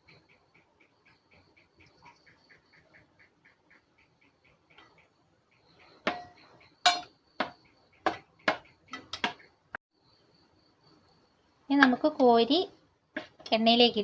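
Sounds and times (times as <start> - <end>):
faint rapid high chirping: 0.0 - 11.6
utensil knocking against bowl: 6.1 - 9.4.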